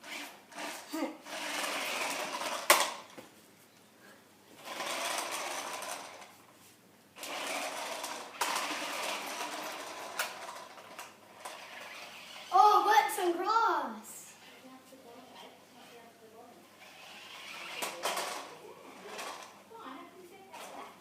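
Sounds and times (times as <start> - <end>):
toy car motor whirring: 0.0 - 3.0, 4.6 - 6.3, 7.2 - 12.6, 16.7 - 19.6.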